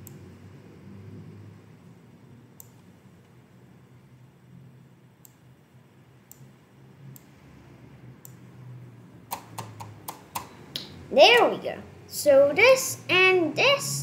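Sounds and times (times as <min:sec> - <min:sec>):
faint clicks: 0:02.6 - 0:03.4.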